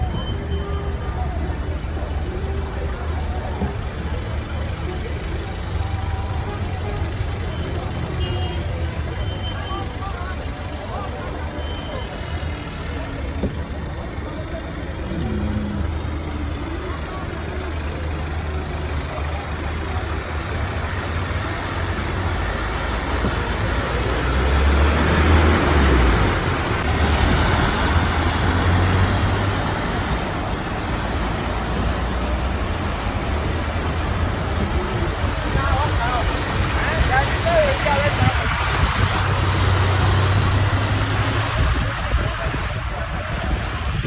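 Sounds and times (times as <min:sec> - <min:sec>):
car engine humming: 0:00.0 - 0:44.0.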